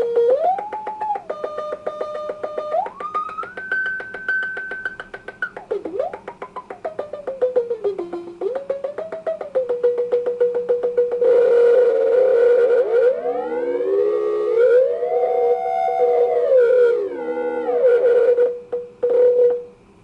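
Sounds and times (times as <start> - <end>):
rapid clicking pulse: 0.0 - 19.6
harsh synthesized whistling tone: 0.0 - 19.8
gliding synthesizer tone: 12.4 - 18.4.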